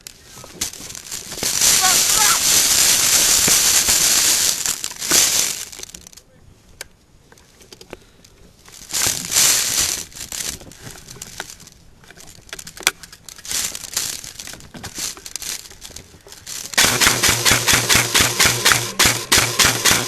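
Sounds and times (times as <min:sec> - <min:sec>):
rustling through brush: 0:00.0 - 0:20.0
clothing and gear brushing: 0:00.2 - 0:05.9, 0:08.8 - 0:11.5
rapid sharp clicks: 0:16.8 - 0:20.0.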